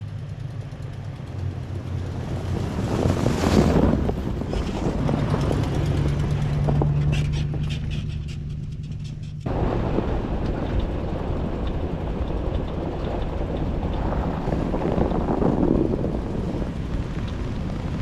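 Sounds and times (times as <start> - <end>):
vehicle engine humming: 0.0 - 18.0
rushing noise: 9.5 - 18.0.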